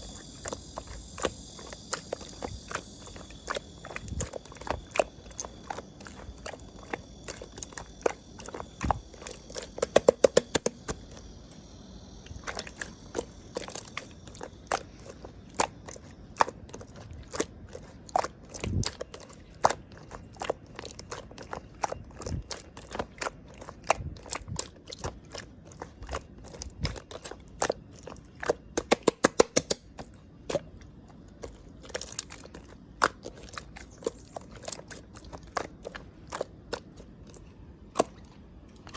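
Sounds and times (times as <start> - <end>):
slime squeezed by hand clicking: 28.8 - 29.9.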